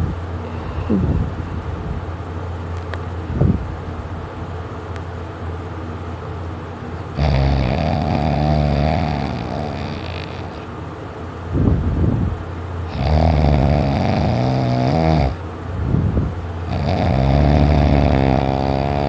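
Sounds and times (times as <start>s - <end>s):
man snoring: 7.2s - 10.7s, 12.9s - 15.4s, 16.7s - 19.0s.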